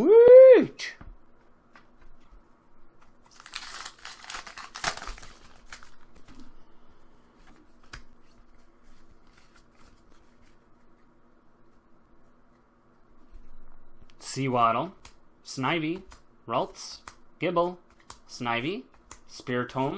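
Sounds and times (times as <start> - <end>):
cards being handled: 3.0 - 6.5, 7.4 - 11.1, 16.9 - 19.9
foil wrapper tearing and crinkling: 3.2 - 6.2.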